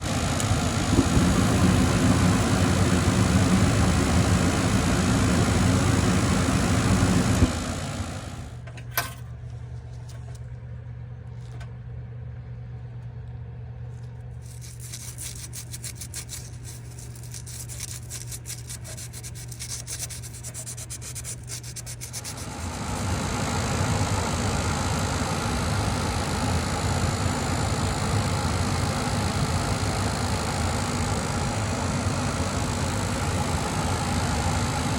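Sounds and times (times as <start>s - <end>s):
gas furnace running: 0.0s - 34.9s
low hum: 0.0s - 34.9s
fast fine scratching: 14.4s - 23.9s.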